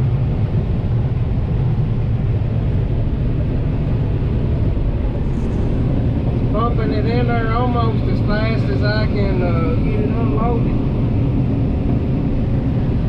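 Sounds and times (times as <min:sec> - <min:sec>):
combine harvester droning: 0:00.0 - 0:13.0.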